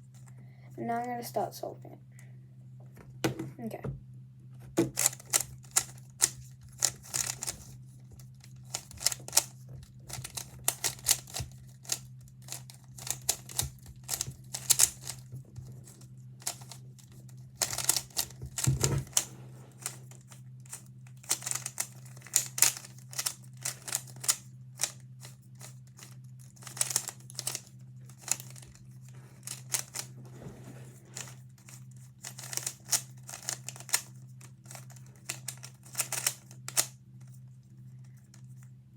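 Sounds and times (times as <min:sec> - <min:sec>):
steady low hum: 0:00.0 - 0:38.9
plastic puzzle cube clicking: 0:04.9 - 0:07.8, 0:08.4 - 0:09.5, 0:10.1 - 0:15.3, 0:16.4 - 0:16.8, 0:17.6 - 0:20.0, 0:20.7 - 0:25.0, 0:25.6 - 0:28.7, 0:29.4 - 0:30.1, 0:31.2 - 0:36.9.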